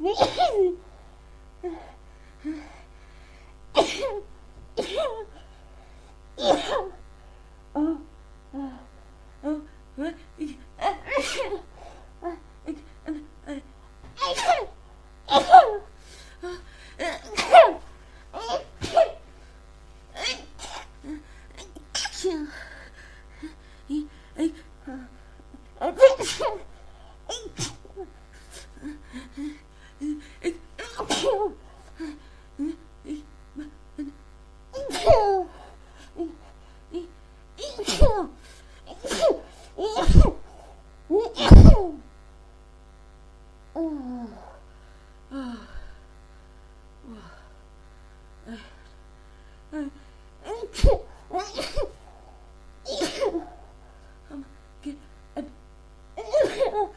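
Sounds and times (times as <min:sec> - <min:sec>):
woman sneezing: 0:00.0 - 0:00.7, 0:10.8 - 0:11.7, 0:14.2 - 0:15.8, 0:17.0 - 0:19.2, 0:20.2 - 0:21.0, 0:21.6 - 0:22.5, 0:25.8 - 0:26.7, 0:30.8 - 0:31.6, 0:34.8 - 0:35.5, 0:37.6 - 0:38.3, 0:38.9 - 0:40.5, 0:41.2 - 0:42.0, 0:50.4 - 0:52.1, 0:52.9 - 0:53.6, 0:56.2 - 0:56.9.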